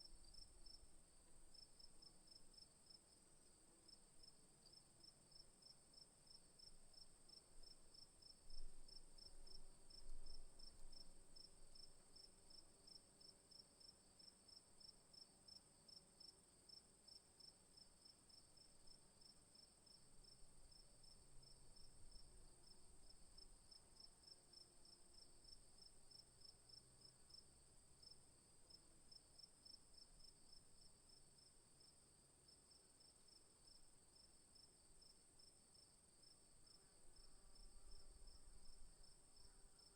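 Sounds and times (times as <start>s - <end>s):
crickets chirping: 33.0s - 39.9s.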